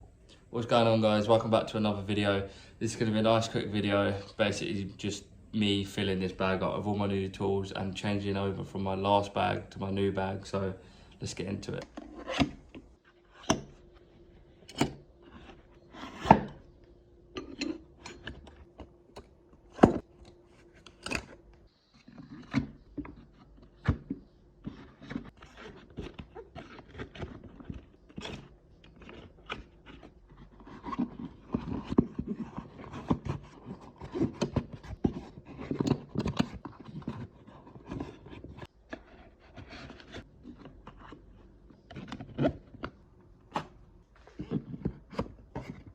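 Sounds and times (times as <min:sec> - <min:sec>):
scraping and rustling: 0:19.6 - 0:45.9.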